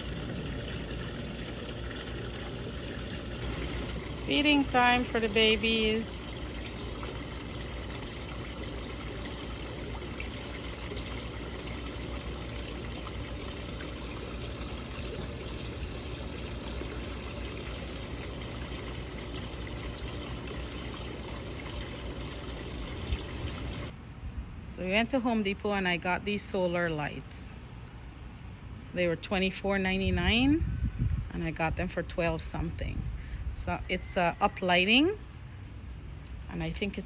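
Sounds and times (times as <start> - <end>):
running trickling water: 0.0 - 24.0.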